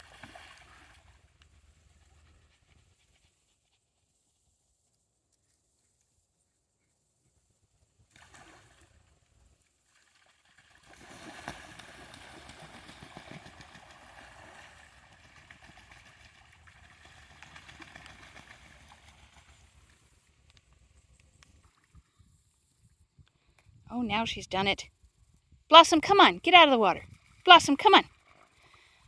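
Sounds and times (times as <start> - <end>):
dog wading in water: 8.1 - 20.2.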